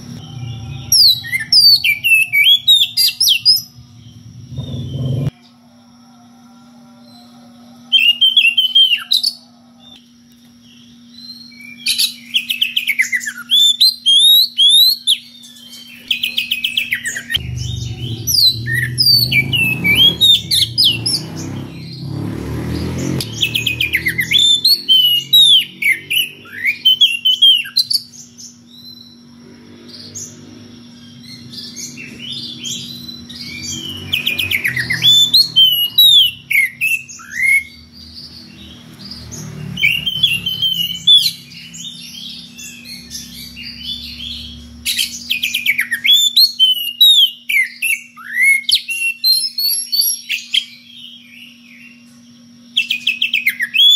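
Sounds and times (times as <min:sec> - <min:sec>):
bird singing whistled notes: 0:00.0 - 0:05.3, 0:10.6 - 0:29.3, 0:30.0 - 0:53.9
steady low hum: 0:00.0 - 0:07.9, 0:15.3 - 0:34.4.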